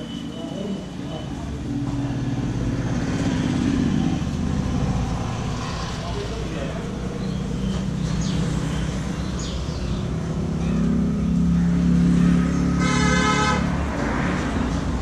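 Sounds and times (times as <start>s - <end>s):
vehicle engine passing: 0.9s - 15.0s
car horn blast: 12.8s - 13.7s.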